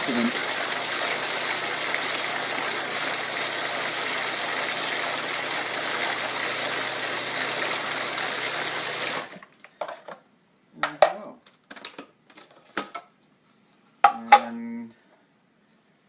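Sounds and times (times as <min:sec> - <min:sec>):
blender running: 0:00.0 - 0:09.4.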